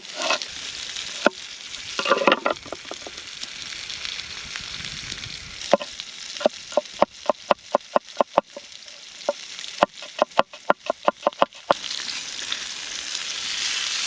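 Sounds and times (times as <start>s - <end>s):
steady hiss: 0.0s - 14.0s.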